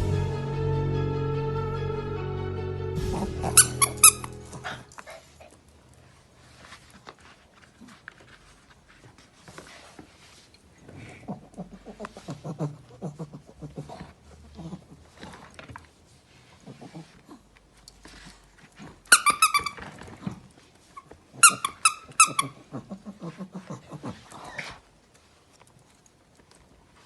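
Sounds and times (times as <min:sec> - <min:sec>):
high squeaky whimpering: 0:03.0 - 0:05.5, 0:10.9 - 0:15.1, 0:18.2 - 0:24.8
pet snoring and sniffing: 0:03.0 - 0:25.0.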